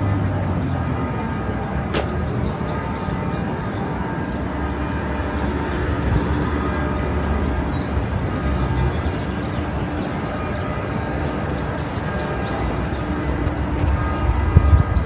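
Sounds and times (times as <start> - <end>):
train rumbling: 0.0 - 15.0.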